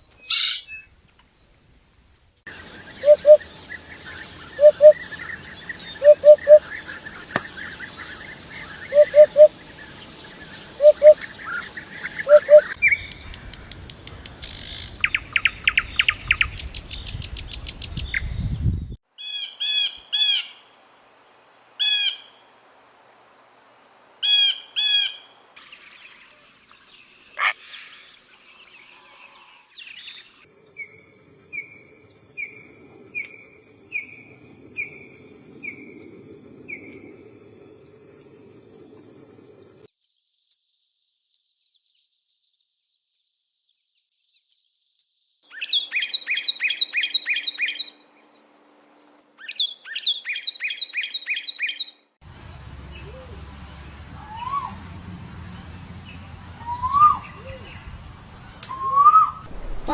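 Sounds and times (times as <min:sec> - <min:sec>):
short evenly spaced bird notes: 0:02.5 - 0:18.4, 0:39.9 - 0:52.0
bird trills: 0:03.0 - 0:03.4, 0:04.5 - 0:05.0, 0:06.0 - 0:06.6, 0:12.2 - 0:18.4
repeated bird chirps: 0:03.0 - 0:03.4, 0:04.6 - 0:05.0, 0:06.0 - 0:06.6, 0:08.9 - 0:09.5, 0:10.8 - 0:11.2, 0:12.2 - 0:18.8, 0:40.0 - 0:40.7, 0:41.3 - 0:41.6, 0:42.2 - 0:47.8, 0:58.8 - 0:59.9.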